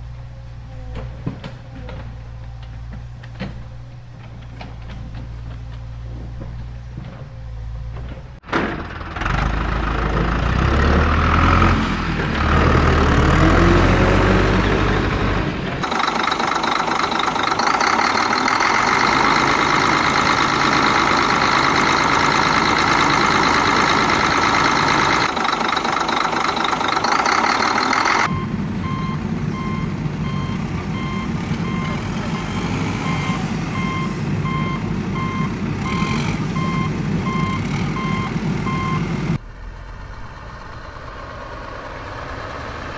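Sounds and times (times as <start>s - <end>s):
construction vehicle motor: 0.0s - 42.9s
reversing alarm beeping: 15.8s - 39.1s.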